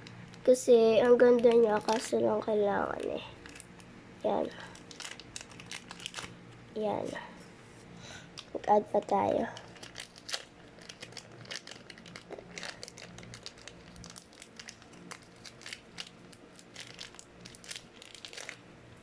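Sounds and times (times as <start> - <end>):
sticky slime crackles: 0.4 - 3.7, 8.4 - 18.6.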